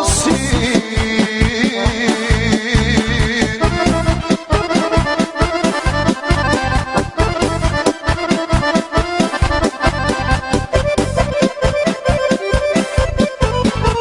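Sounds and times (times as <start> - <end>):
accordion melody: 0.0 - 14.0
quick steady beat: 0.0 - 14.0.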